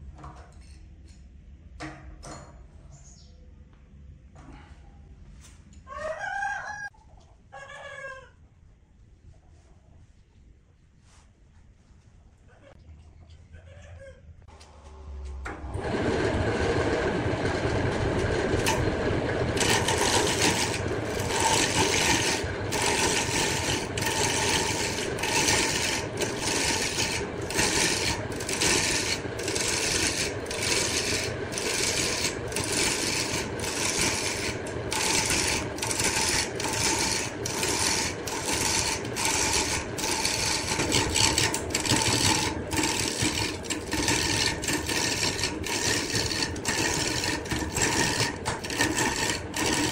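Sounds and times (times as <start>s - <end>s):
tool rubbing wood on lathe: 15.8s - 49.9s
rasping strokes: 17.7s - 49.9s.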